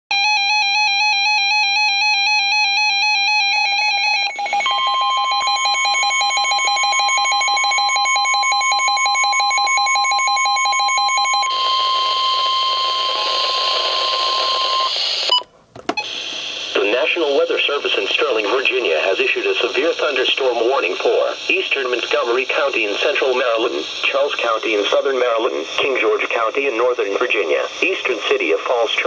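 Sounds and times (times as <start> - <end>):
steady alarm tone: 0.1 - 15.4
radio hiss: 16.0 - 29.0.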